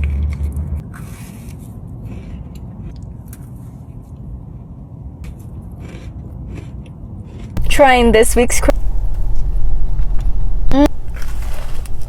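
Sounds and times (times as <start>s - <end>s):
person chewing cookie: 0.0s - 4.3s, 5.2s - 7.6s.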